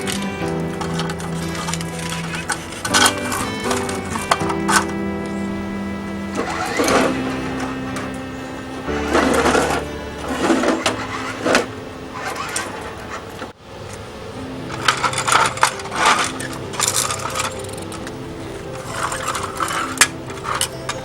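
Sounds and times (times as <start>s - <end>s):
light background music: 0.0s - 13.1s, 14.2s - 21.0s
toy pieces clattering: 14.7s - 21.0s.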